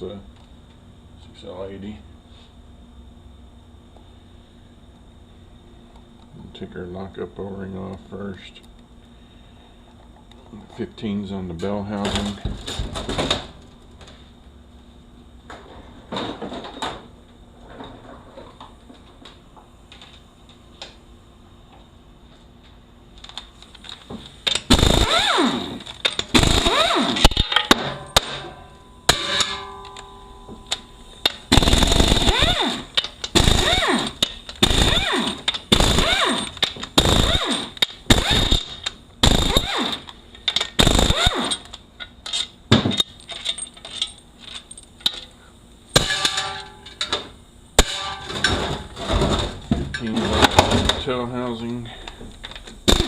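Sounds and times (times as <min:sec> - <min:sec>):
impact wrench whining: 0:24.4 - 0:44.1, 0:52.4 - 0:53.0.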